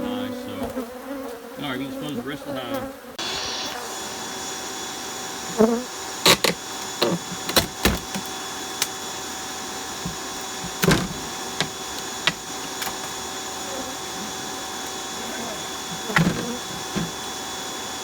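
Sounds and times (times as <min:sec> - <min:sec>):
steady motor-like hum: 0:03.2 - 0:18.0
sharp knocks and thuds: 0:10.0 - 0:13.1, 0:15.9 - 0:17.2.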